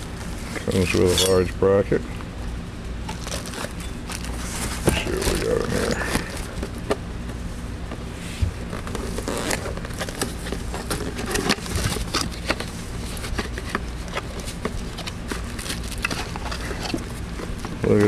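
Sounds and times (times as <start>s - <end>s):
packaging rustling and clicking: 3.1s - 7.0s, 8.6s - 18.0s.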